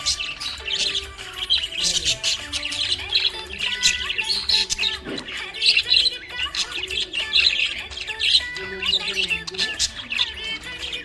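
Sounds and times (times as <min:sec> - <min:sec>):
parrots chirping and twittering: 0:00.0 - 0:11.0.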